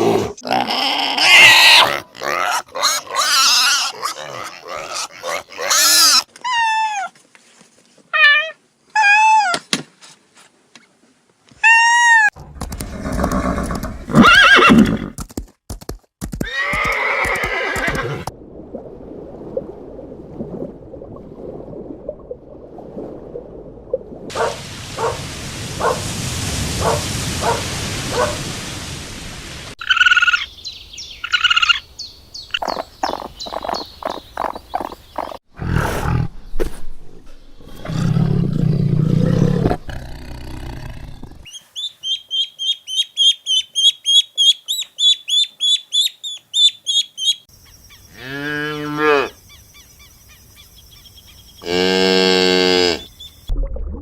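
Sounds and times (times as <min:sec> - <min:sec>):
horses neighing: 0:12.8 - 0:15.2, 0:16.4 - 0:18.3.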